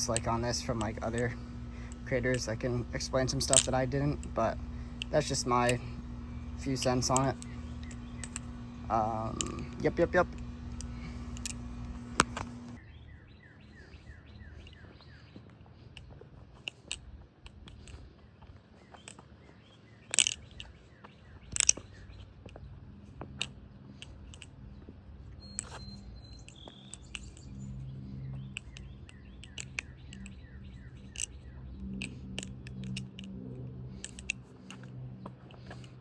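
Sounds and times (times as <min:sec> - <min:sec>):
metal knife handles clacking: 0:00.0 - 0:12.6, 0:20.1 - 0:20.8, 0:21.5 - 0:36.0
bird chirps: 0:04.7 - 0:09.8, 0:12.8 - 0:16.2, 0:24.7 - 0:32.9.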